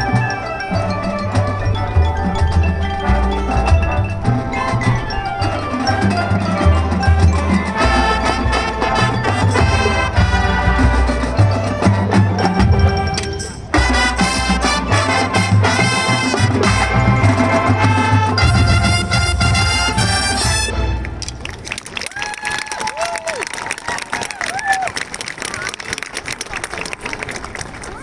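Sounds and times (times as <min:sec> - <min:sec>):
mallet percussion: 0:00.0 - 0:21.6
marching band playing: 0:00.0 - 0:22.1.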